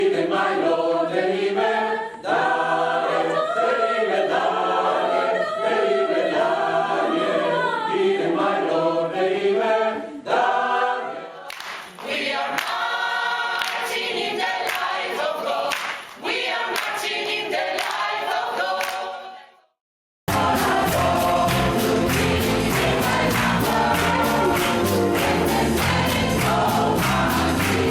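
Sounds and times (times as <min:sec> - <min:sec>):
gospel choir singing in harmony: 0:00.0 - 0:19.6, 0:20.3 - 0:27.9
music: 0:00.0 - 0:19.7, 0:20.3 - 0:27.9
steady beat of sharp strokes: 0:20.3 - 0:27.9.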